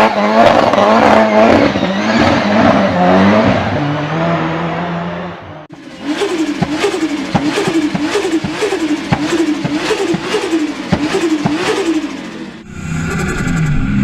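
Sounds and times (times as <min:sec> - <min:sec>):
car engine revving with cracks: 0:00.0 - 0:05.0, 0:05.6 - 0:14.0
turbo flutter: 0:05.8 - 0:14.0.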